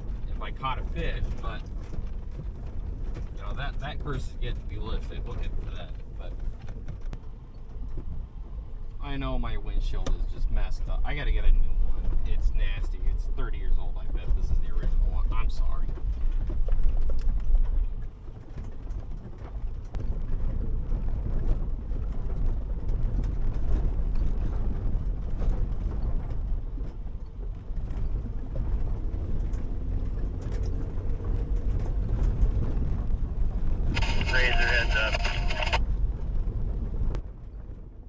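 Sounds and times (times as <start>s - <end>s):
knocks and rattles of truck: 0.0s - 9.0s, 14.1s - 33.9s
engine and tyre rumble: 0.0s - 38.0s.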